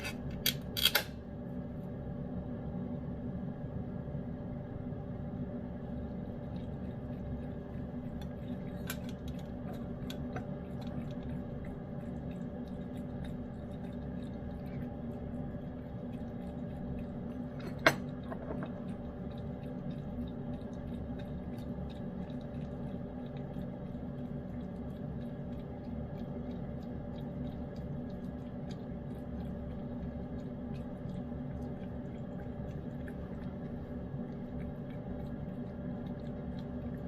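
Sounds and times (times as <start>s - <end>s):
steady low hum: 0.0s - 37.0s
cat chewing and licking: 5.2s - 37.0s.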